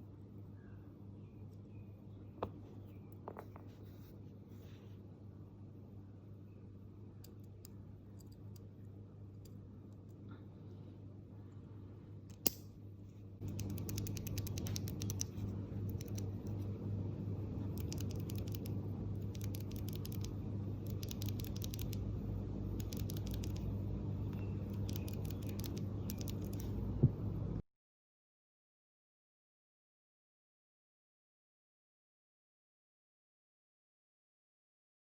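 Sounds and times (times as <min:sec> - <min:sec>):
steady low hum: 0:00.0 - 0:27.6
keyboard switches clicking: 0:13.4 - 0:16.3, 0:17.7 - 0:22.0, 0:22.8 - 0:23.6, 0:24.7 - 0:26.7.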